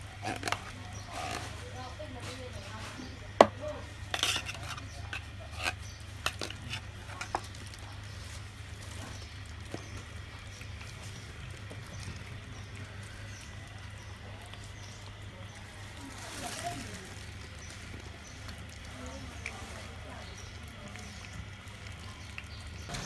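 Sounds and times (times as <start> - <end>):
utensils clinking on dishes: 0.0 - 8.1.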